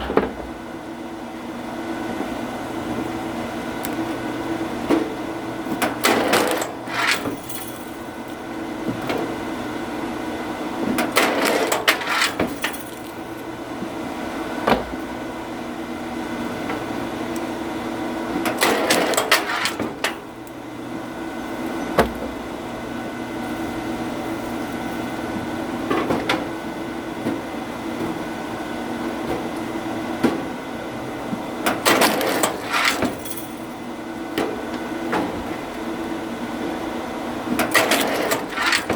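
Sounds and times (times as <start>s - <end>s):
machine humming: 0.0s - 12.1s.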